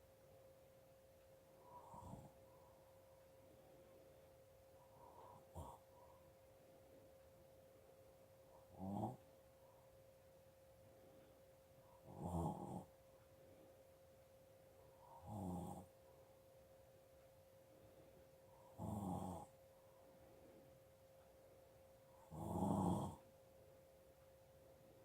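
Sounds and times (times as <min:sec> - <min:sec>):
faint steady hum: 0:00.0 - 0:25.0
person snoring: 0:08.7 - 0:09.2, 0:12.0 - 0:12.9, 0:15.1 - 0:15.9, 0:18.7 - 0:19.5, 0:22.2 - 0:23.2.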